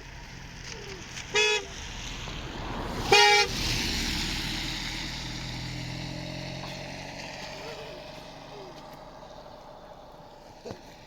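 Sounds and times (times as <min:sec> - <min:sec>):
engine and road noise: 0:00.0 - 0:11.0
vehicle horn toots: 0:01.3 - 0:01.8, 0:03.0 - 0:03.6.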